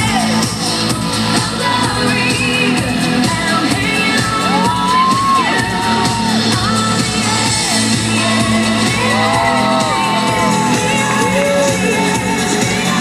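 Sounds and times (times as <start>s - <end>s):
pop song with singing: 0.0s - 13.0s
crowd shouting and whooping: 4.1s - 13.0s.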